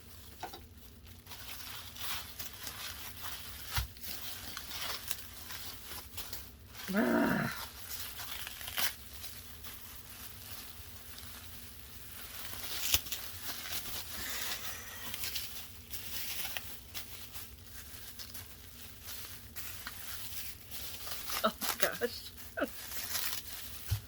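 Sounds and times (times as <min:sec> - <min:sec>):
packing wrap rustling: 0:00.0 - 0:24.0.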